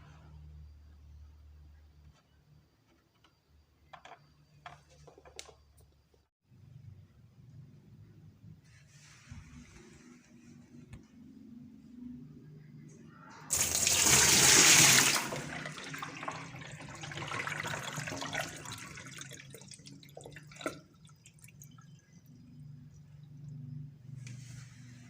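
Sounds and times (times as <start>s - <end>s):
water gushing from drain: 13.5s - 23.5s.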